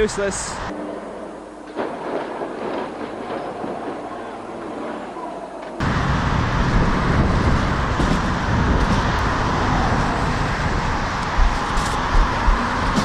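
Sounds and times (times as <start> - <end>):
road traffic noise: 0.0 - 1.8, 5.2 - 13.0
low uneven rumble: 1.8 - 13.0.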